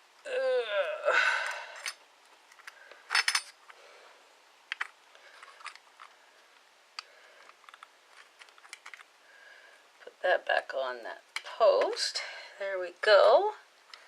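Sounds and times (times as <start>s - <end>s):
metal parts clicking and clinking: 1.4s - 3.8s, 4.7s - 6.1s, 7.4s - 9.1s.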